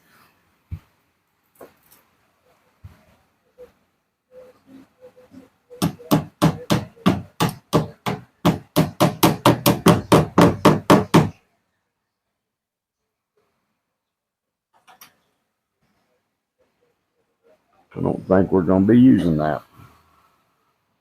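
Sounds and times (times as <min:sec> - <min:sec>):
hammer striking wood: 0:05.8 - 0:11.4.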